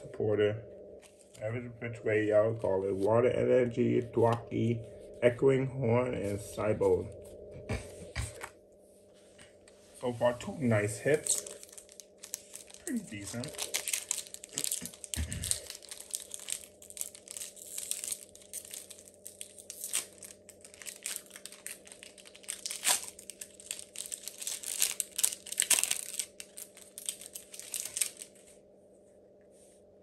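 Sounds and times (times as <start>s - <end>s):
foil wrapper crinkling and tearing: 11.1s - 28.4s.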